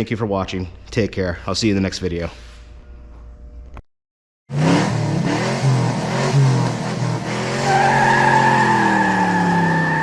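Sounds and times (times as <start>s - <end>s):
car engine revving: 4.5s - 10.0s
tyres squealing: 7.6s - 10.0s.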